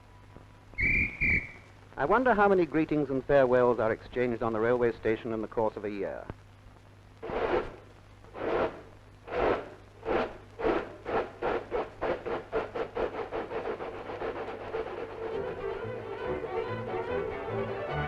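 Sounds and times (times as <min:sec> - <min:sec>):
steam locomotive chuffing: 0:08.4 - 0:15.9.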